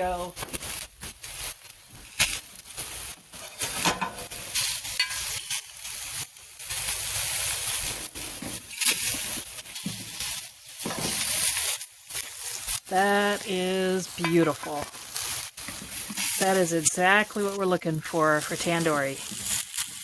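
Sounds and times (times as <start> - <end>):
food sizzling on grill: 0.0 - 20.0.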